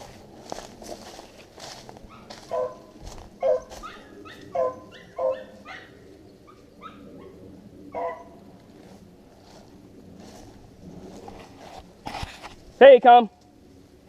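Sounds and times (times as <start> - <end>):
hound barking loudly: 2.1 - 6.0, 7.9 - 8.4.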